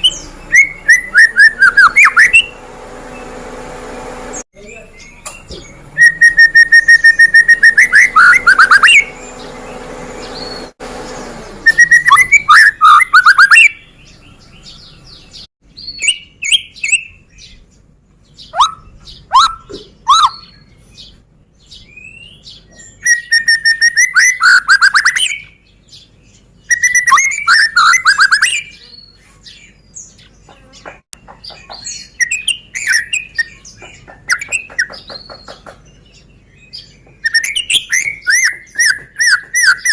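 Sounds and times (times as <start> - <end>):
soft bird whistles and chirps: 5.1 - 9.2, 11.7 - 13.8, 18.4 - 20.9, 21.8 - 25.6, 26.6 - 29.8, 31.8 - 33.6, 36.7 - 39.9
bird rapid repeated notes: 6.0 - 11.1, 18.5 - 20.5.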